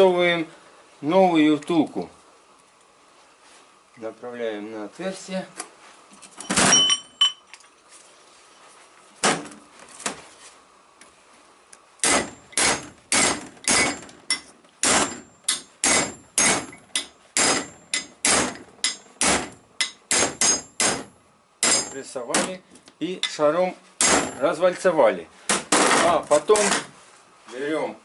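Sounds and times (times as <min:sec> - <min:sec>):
hammer striking metal driver: 0:12.0 - 0:22.5.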